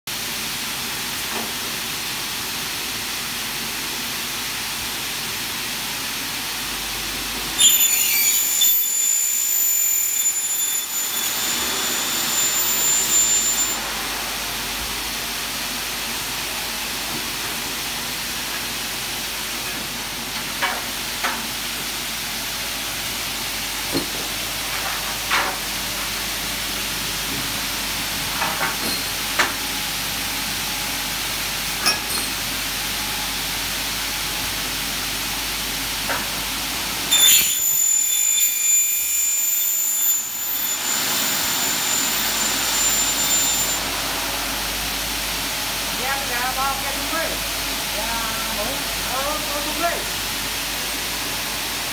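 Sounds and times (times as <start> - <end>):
saw cutting aluminium: 7.6 - 14.0, 37.1 - 43.9.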